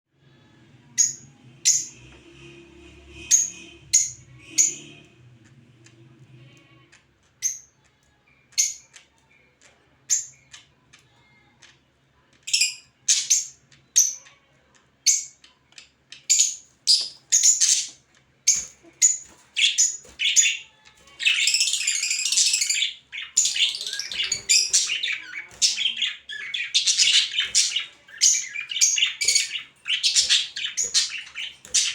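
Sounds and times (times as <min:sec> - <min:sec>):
faint low hum: 0:00.2 - 0:31.9
cockatiels chirping: 0:16.2 - 0:31.9.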